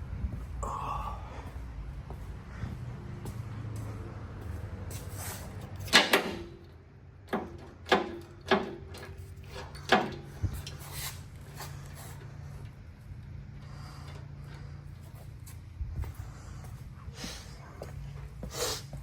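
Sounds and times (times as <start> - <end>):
steady low hum: 0.0 - 5.8, 8.7 - 19.0
metal clunks of lift locks: 5.8 - 10.4.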